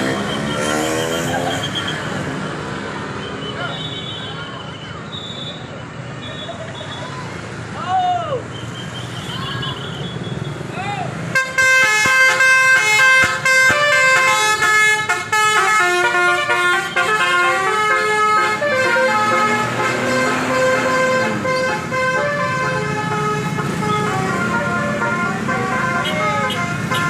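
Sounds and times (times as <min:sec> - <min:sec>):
bus engine rumble: 0:09.2 - 0:27.0
bus horn playing a melody: 0:11.3 - 0:27.0.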